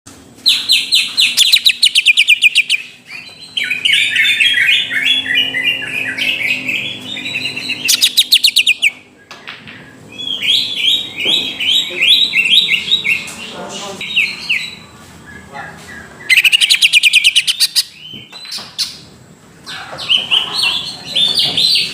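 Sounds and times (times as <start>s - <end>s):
bird singing falling whistles: 7.9s - 9.0s.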